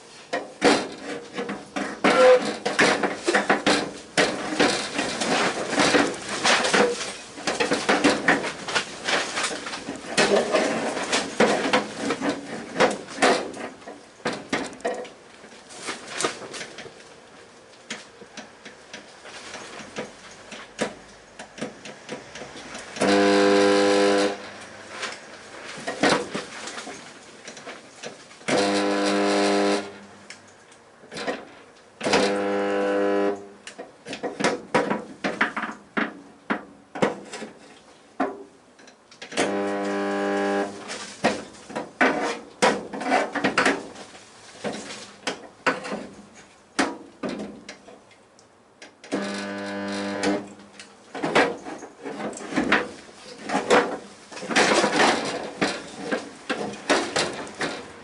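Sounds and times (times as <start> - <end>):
welder buzzing: 23.0 - 24.6, 28.5 - 30.1, 32.0 - 33.5, 39.4 - 40.9, 49.1 - 50.6.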